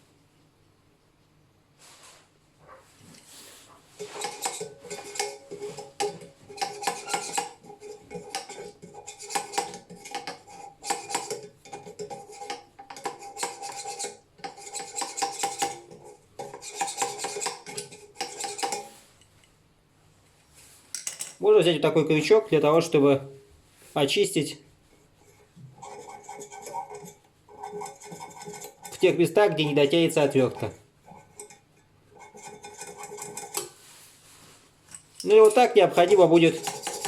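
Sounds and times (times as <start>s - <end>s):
screwdriver scraping metal fan blades: 4.0s - 19.0s, 25.2s - 33.8s, 34.9s - 37.0s.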